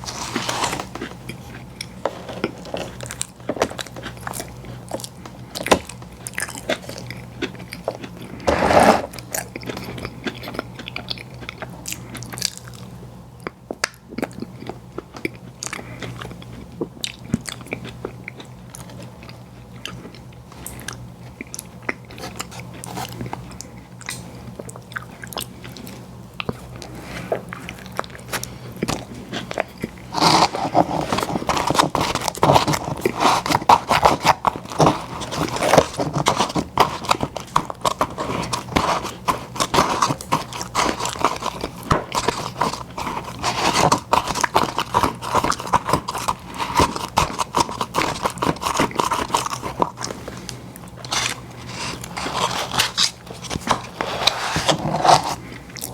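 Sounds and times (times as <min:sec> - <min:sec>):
biting and wet chewing: 0:00.0 - 0:55.9.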